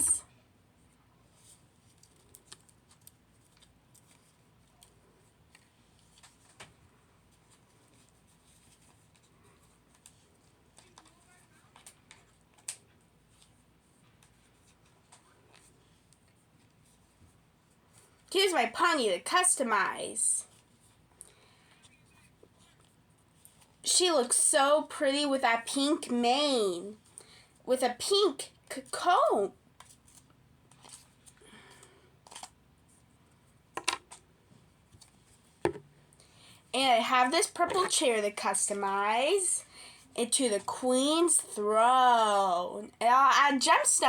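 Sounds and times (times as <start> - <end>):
faint clicks of objects handled: 0.8 - 18.3, 29.8 - 36.3
plastic toys clicking and tapping: 33.8 - 34.2.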